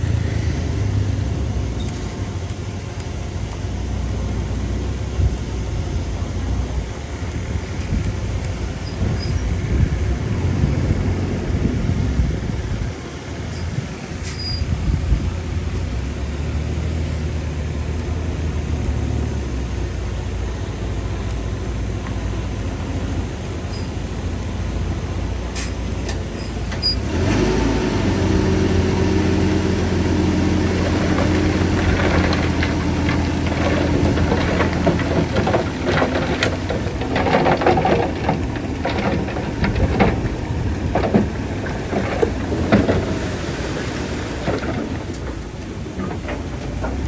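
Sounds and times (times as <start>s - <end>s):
bulldozer diesel engine running: 0.0s - 47.0s
metal clanks and rattles: 30.5s - 47.0s.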